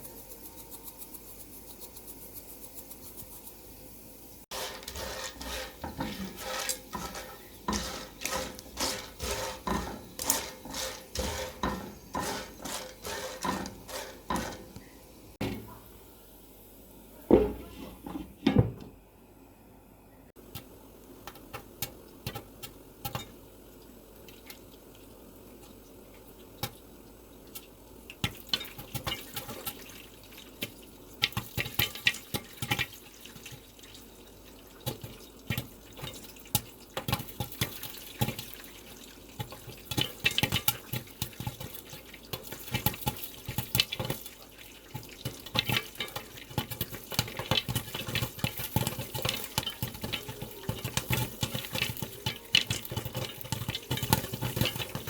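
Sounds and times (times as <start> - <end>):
oil sizzling: 0.0 - 18.1, 20.4 - 55.0
popcorn popping: 4.5 - 15.9, 20.4 - 23.4, 26.3 - 26.9, 27.5 - 34.1, 34.7 - 55.0.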